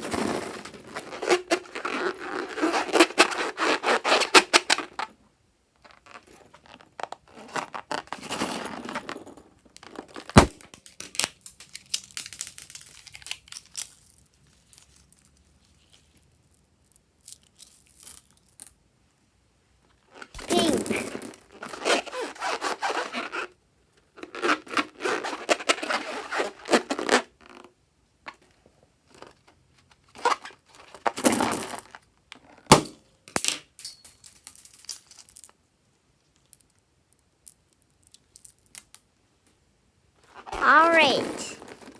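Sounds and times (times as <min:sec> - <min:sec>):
balloon sharp snap: 0:10.4 - 0:10.6, 0:20.4 - 0:21.0.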